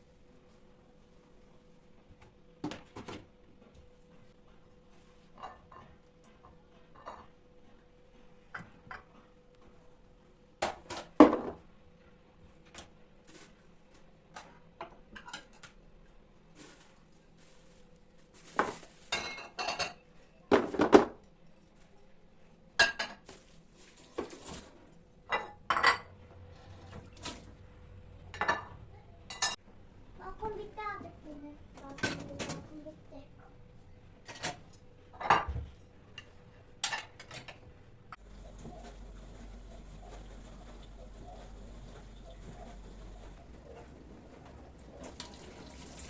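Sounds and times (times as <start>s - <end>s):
dishes and cutlery clinking: 5.2s - 7.4s, 14.3s - 15.8s, 18.6s - 21.8s, 22.8s - 23.4s, 25.3s - 27.2s, 28.3s - 29.6s, 34.2s - 37.6s.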